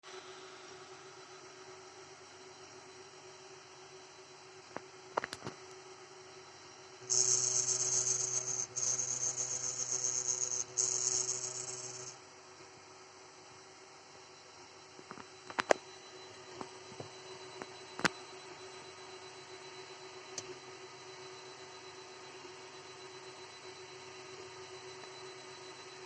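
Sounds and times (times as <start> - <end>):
loud high-pitched buzz: 7.0 - 12.2
printer fan hum: 7.1 - 12.1.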